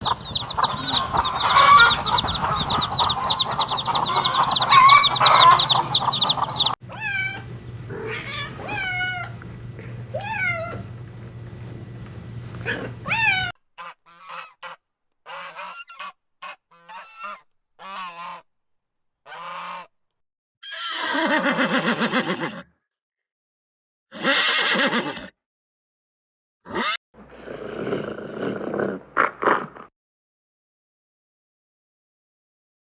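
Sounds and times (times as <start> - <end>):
short clipped bird calls: 0.0 - 7.5
flock of fowl calling: 0.0 - 13.5
swooping honking calls: 0.0 - 13.5.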